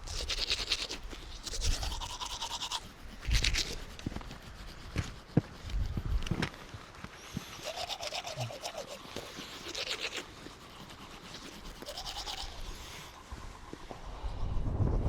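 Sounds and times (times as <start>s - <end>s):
toothbrush scrubbing teeth: 0.0s - 6.3s, 7.3s - 14.1s
wind noise: 0.0s - 7.4s, 12.1s - 15.0s.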